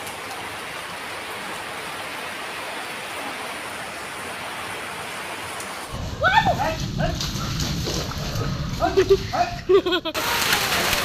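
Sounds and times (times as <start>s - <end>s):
heavy rain pouring: 0.0s - 11.0s.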